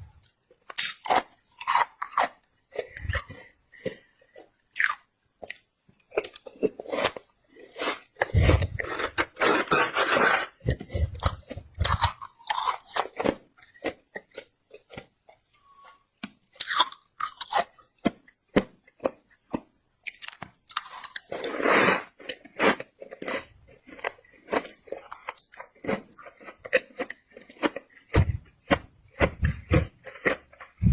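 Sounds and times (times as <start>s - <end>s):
chewing crunchy frost: 0.1s - 30.9s.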